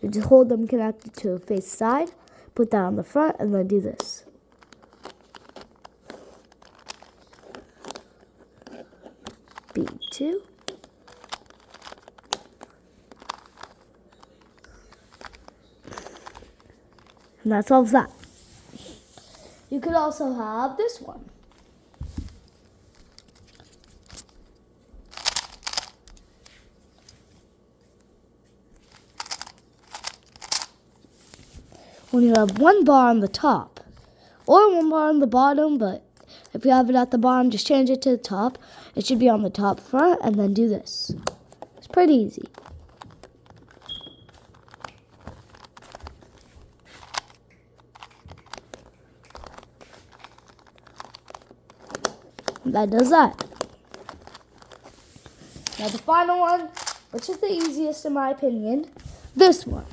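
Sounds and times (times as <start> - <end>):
puzzle cube plastic clicking: 4.0 - 17.3, 25.1 - 26.3, 28.8 - 30.8, 32.2 - 32.8, 41.2 - 54.9, 56.7 - 57.8.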